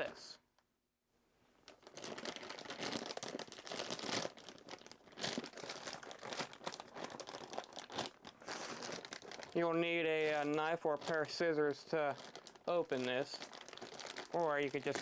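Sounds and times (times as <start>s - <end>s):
plastic wrapping crinkling: 1.6s - 15.0s.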